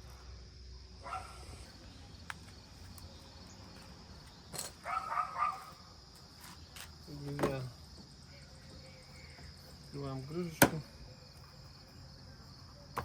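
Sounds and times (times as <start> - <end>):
insects chirring: 0.0 - 13.0
dog barking: 1.0 - 1.4, 4.8 - 5.8.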